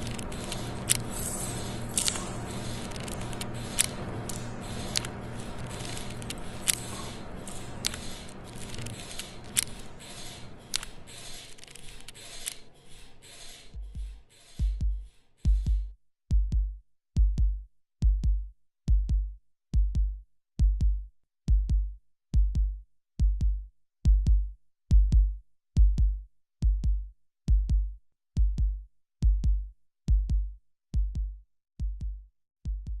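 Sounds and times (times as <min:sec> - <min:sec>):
scratchy hiss: 0:00.0 - 0:12.6
heartbeat thumps: 0:13.8 - 0:33.0.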